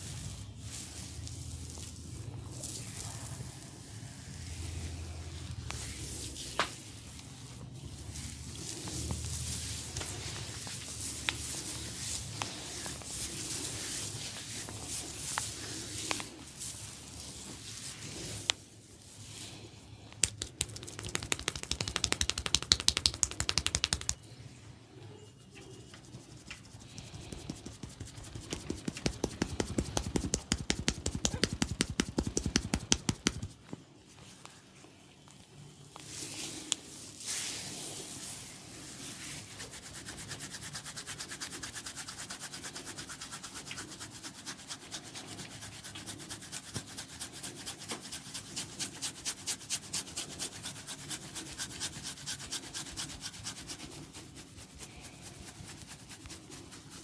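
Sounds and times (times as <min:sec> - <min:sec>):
hands rubbing oiled hair: 0:00.0 - 0:24.3, 0:25.9 - 0:34.6, 0:36.0 - 0:57.0
hands tapping on a head: 0:20.2 - 0:24.2, 0:27.3 - 0:33.6.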